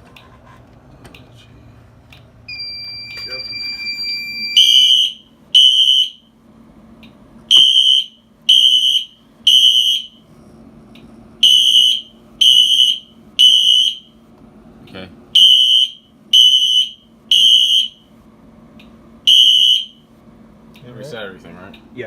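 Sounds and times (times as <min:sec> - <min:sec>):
fire alarm beeps: 0:02.5 - 0:06.3, 0:07.5 - 0:10.2, 0:11.4 - 0:14.2, 0:15.4 - 0:18.1, 0:19.3 - 0:20.1.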